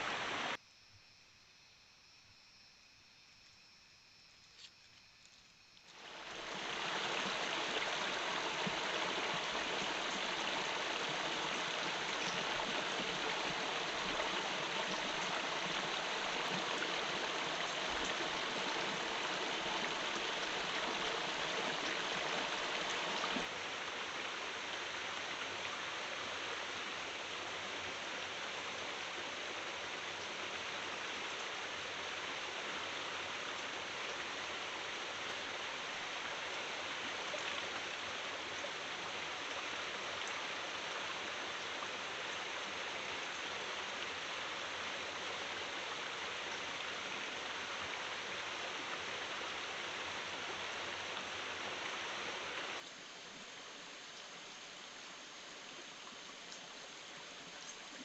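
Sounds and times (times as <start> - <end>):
rushing water: 0.0 - 0.6, 5.9 - 58.0.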